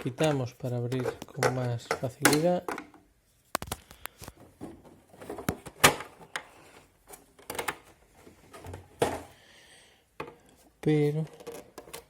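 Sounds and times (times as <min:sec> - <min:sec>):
plastic clicks and knocks: 0:00.2 - 0:06.5.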